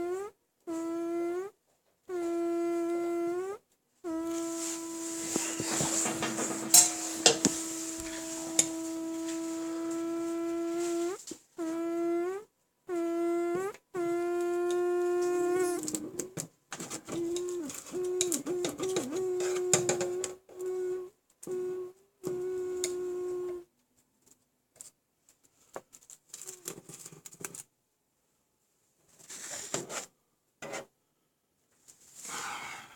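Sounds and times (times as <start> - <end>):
window whistling in draught: 0.0 - 16.2, 17.1 - 23.6.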